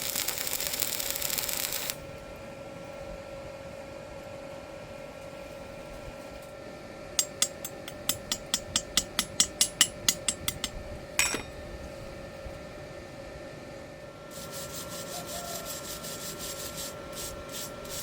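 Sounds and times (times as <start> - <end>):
faint steady hum: 0.0 - 18.0
small hammer tapping metal: 7.2 - 11.6.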